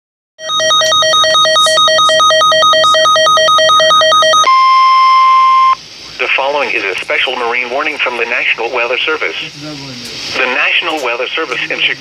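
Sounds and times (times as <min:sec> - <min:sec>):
weather radio alarm tone: 0:00.4 - 0:05.8, 0:10.4 - 0:10.9.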